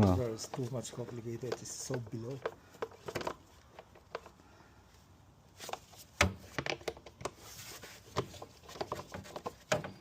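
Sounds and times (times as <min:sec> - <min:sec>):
handling noise clicks and knocks: 0:00.0 - 0:04.4.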